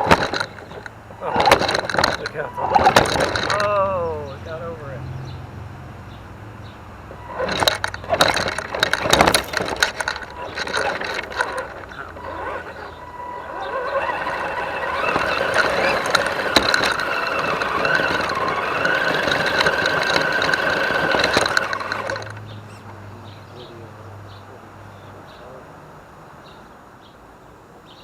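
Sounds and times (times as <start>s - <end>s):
electric motor whining: 0.0s - 4.9s, 7.1s - 22.6s.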